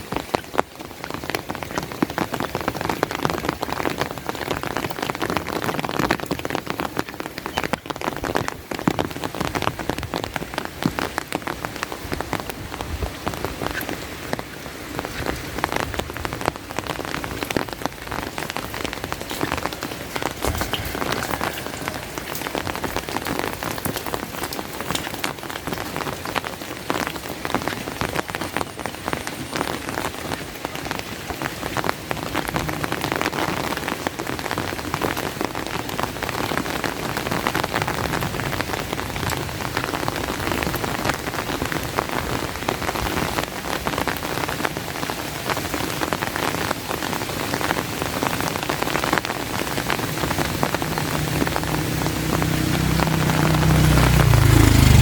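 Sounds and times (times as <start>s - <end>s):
rain falling: 0.0s - 55.0s
low rumble: 20.1s - 24.6s.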